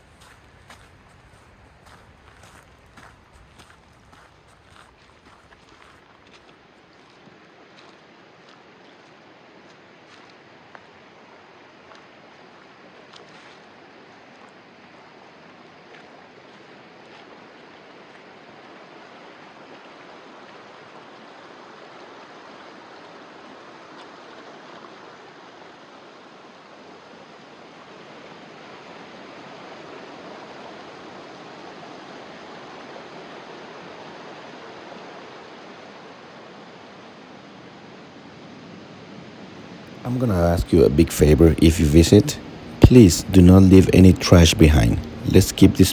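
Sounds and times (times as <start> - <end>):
creek water rushing: 16.4 - 36.7.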